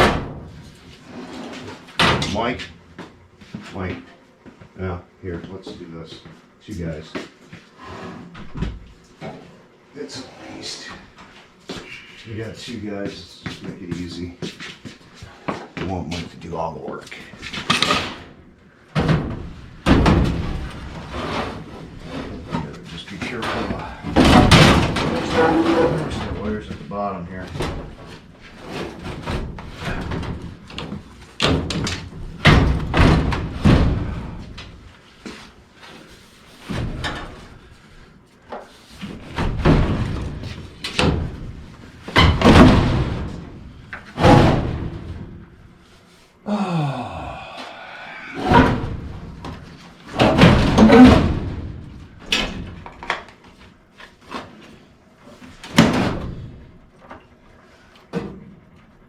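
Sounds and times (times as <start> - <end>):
metal banging and scraping: 19.0 - 34.8, 38.9 - 45.6, 48.4 - 53.1.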